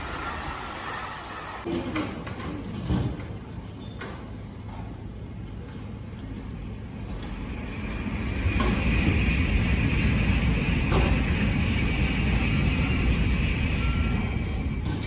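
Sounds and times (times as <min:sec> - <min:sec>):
high-speed train passing: 0:00.0 - 0:01.7, 0:06.4 - 0:15.0.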